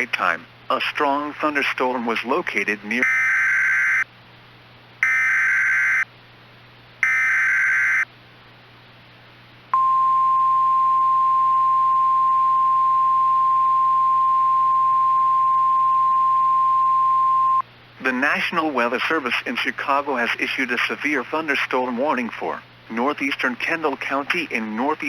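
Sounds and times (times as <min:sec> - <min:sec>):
continuous alarm beep: 0:03.0 - 0:04.0, 0:05.0 - 0:06.0, 0:07.0 - 0:08.1, 0:09.8 - 0:17.6.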